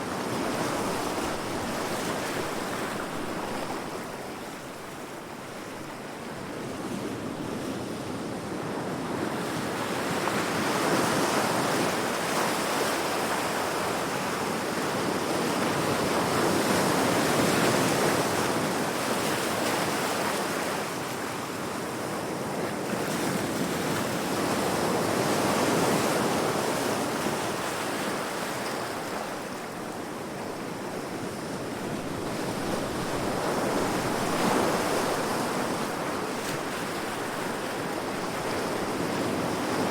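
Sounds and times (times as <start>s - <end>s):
waves crashing against rocks: 32.1s - 39.9s.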